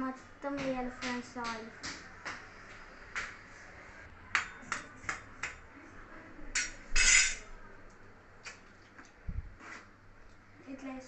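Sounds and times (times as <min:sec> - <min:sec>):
utensils tapping cookware: 0:06.5 - 0:07.4.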